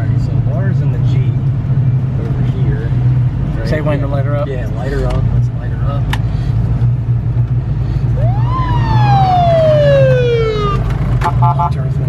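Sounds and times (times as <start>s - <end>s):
low engine rumble: 0.0s - 12.0s
siren chirp: 8.2s - 10.9s
siren wailing: 8.2s - 10.9s.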